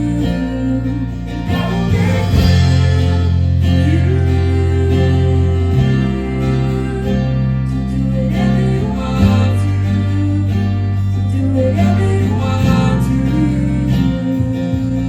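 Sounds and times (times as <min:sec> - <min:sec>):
acoustic guitar: 0:00.0 - 0:15.0
sustained bass: 0:00.0 - 0:15.0
worship band music: 0:00.0 - 0:15.0.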